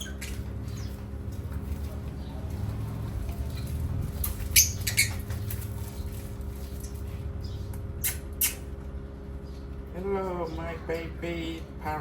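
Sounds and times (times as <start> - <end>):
parrot squawking: 0.0 - 0.4, 4.5 - 5.4.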